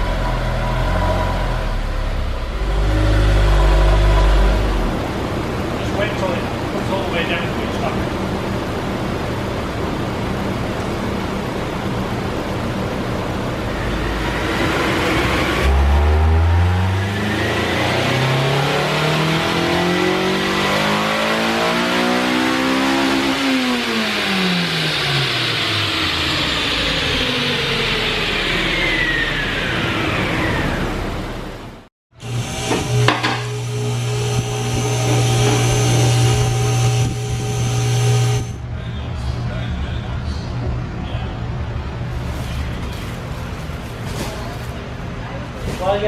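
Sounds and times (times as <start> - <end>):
high whine spinning down: 0.0 - 7.8, 13.4 - 20.6, 22.1 - 38.7
car engine revving on dyno: 0.0 - 10.3, 13.4 - 38.6.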